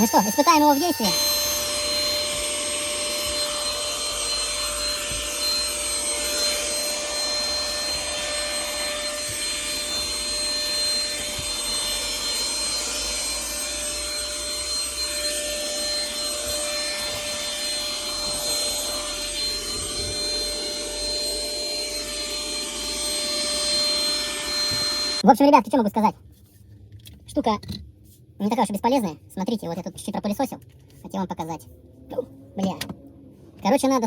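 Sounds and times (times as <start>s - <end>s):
vacuum motor whine: 0.0s - 25.2s.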